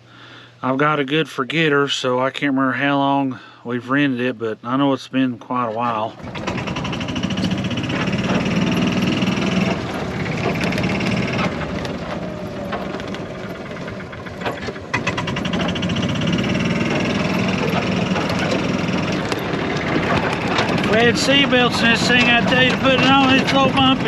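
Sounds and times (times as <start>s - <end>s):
vehicle body rattling: 6.2s - 24.0s
vehicle engine running: 6.2s - 24.0s
vehicle jolt: 6.2s - 24.0s.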